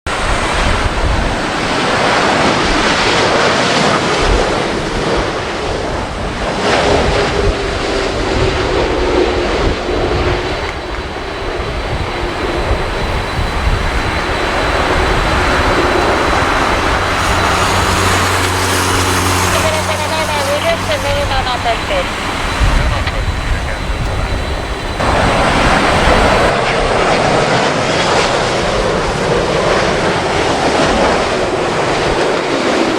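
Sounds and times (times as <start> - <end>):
jet airliner engines: 0.1 - 32.9
wind buffeting microphone: 0.1 - 32.9
faint steady whine: 9.3 - 26.5.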